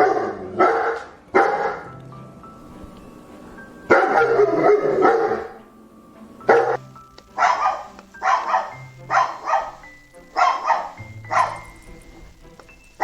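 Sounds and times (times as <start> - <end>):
dog barking: 0.0 - 1.9, 3.9 - 5.6, 6.4 - 6.8, 7.4 - 11.8
soft background music: 0.0 - 13.0.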